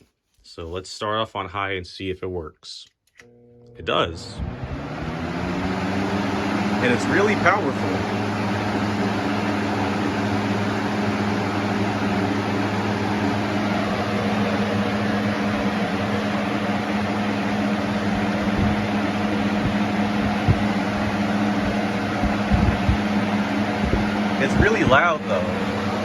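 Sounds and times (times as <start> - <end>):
box fan running on high: 3.2 - 26.0
short low thumps: 18.4 - 18.9, 19.5 - 23.1, 23.7 - 24.9.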